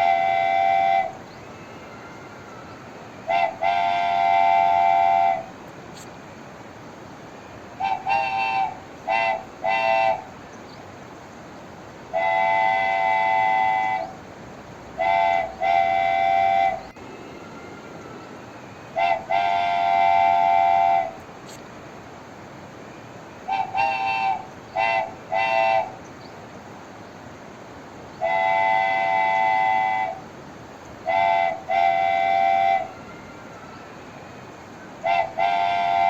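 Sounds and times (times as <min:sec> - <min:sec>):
wooden train whistle toots: 0:00.0 - 0:05.6, 0:07.7 - 0:10.4, 0:12.1 - 0:14.2, 0:15.0 - 0:21.2, 0:23.4 - 0:26.0, 0:28.2 - 0:30.3, 0:31.0 - 0:36.0.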